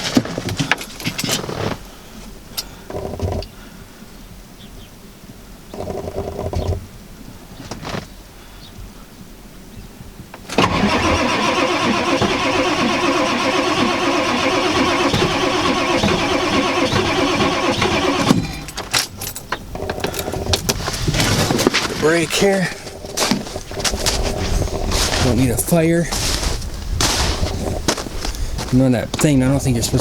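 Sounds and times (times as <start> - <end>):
diesel engine cranking on starter: 10.4 - 21.3.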